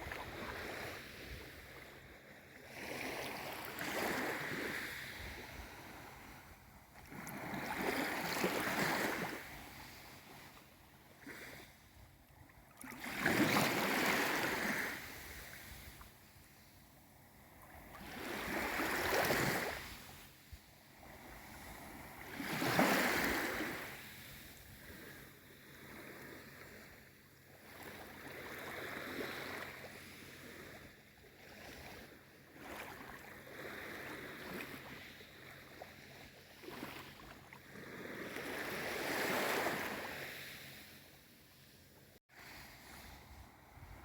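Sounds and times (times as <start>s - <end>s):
small waves washing in: 0.0s - 12.0s, 12.7s - 16.5s, 17.4s - 44.0s.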